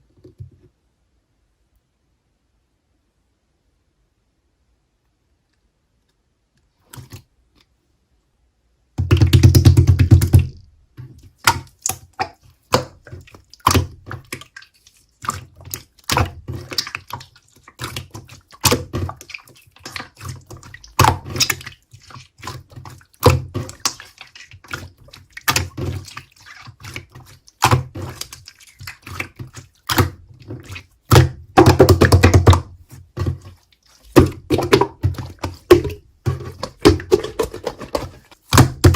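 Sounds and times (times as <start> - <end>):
slime squished by hand: 11.3 - 38.9.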